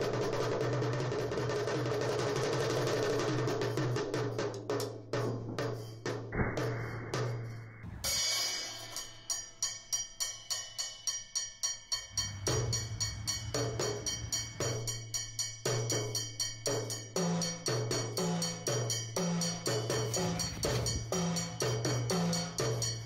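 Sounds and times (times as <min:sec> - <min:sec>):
clicking percussion beat: 0:08.1 - 0:23.0.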